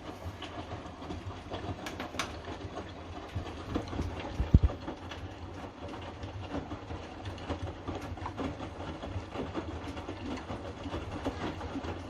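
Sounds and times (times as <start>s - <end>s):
washing machine drum turning: 0.0s - 5.8s
low motor hum: 0.0s - 12.0s.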